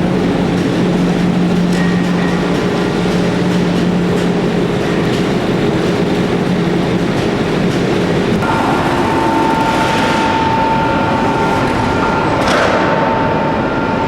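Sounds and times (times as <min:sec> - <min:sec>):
heavy machinery rumble and clatter: 0:00.0 - 0:14.0
steady high tone: 0:08.4 - 0:14.0.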